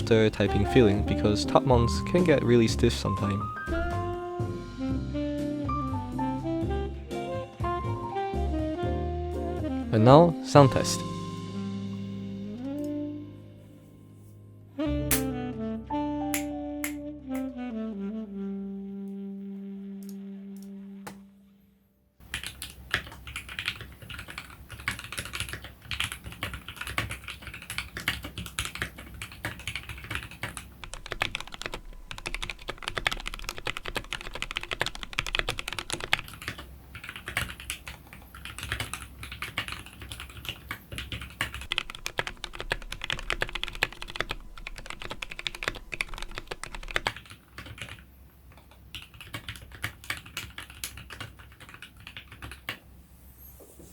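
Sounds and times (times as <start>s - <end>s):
fast typing on mechanical keyboard: 22.2s - 52.8s.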